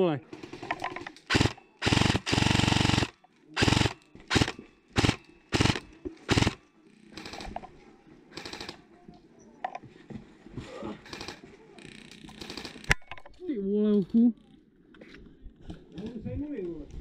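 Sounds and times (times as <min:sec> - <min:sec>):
airsoft rifle full-auto bursts: 0:01.3 - 0:06.6, 0:07.2 - 0:07.6, 0:08.3 - 0:08.8.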